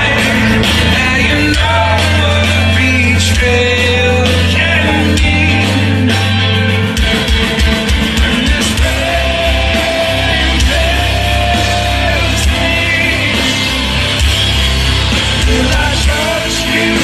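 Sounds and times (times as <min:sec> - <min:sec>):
sung vocal with held notes: 0:00.0 - 0:06.3
drums: 0:00.0 - 0:17.0
rock band playing live: 0:00.0 - 0:17.0.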